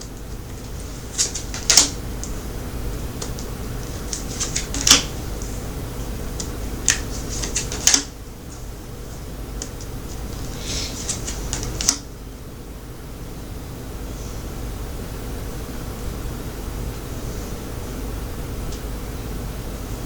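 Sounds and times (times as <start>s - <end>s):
steady low hum: 0.0s - 20.0s
cards snapping and tapping: 1.1s - 2.4s, 3.2s - 5.2s, 6.4s - 8.1s, 10.8s - 12.0s.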